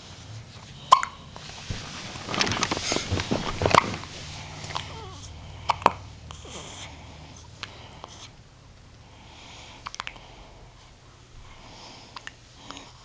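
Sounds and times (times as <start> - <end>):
rustling: 1.4 - 5.3
baby hiccupping: 4.7 - 6.8.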